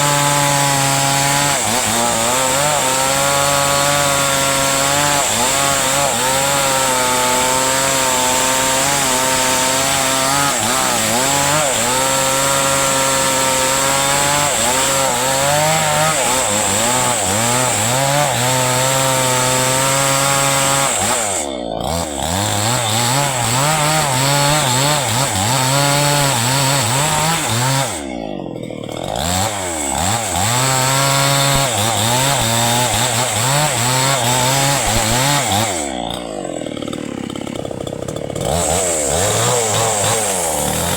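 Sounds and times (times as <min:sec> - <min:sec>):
chainsaw cutting wood: 0:00.0 - 0:40.9.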